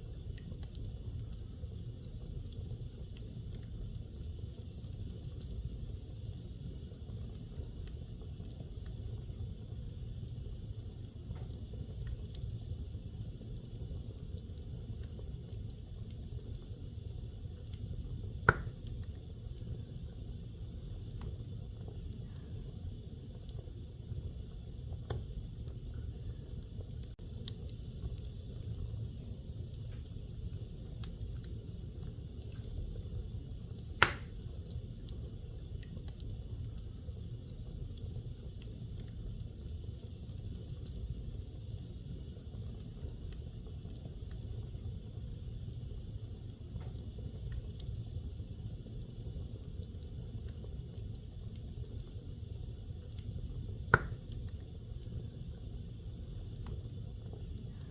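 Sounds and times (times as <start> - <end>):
fire burning with crackles: 0.0 - 57.9
burning wood popping: 11.3 - 19.8, 26.8 - 45.2, 46.0 - 55.2.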